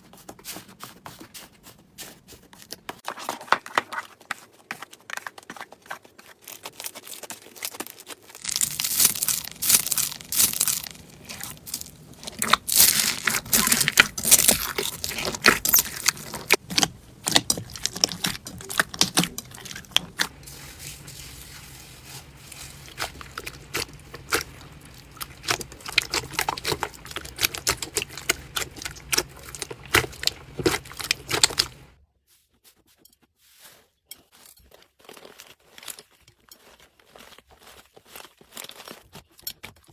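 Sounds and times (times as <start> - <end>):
slime crackling and popping: 6.4 - 20.4, 22.6 - 31.9.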